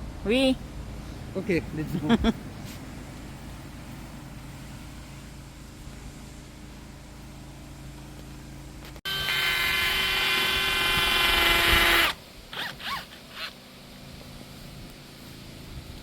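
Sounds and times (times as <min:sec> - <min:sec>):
power drill running: 0:09.1 - 0:13.5.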